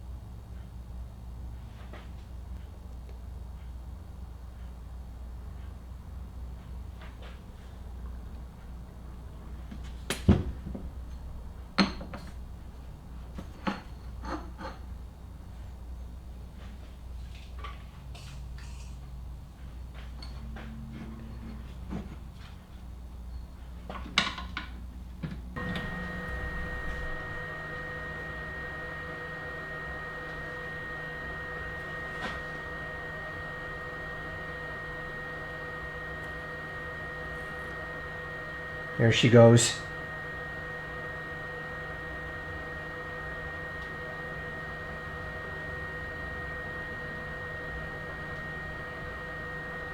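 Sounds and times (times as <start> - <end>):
electrical hum: 25.2 - 49.9
thin high whine: 25.6 - 49.9.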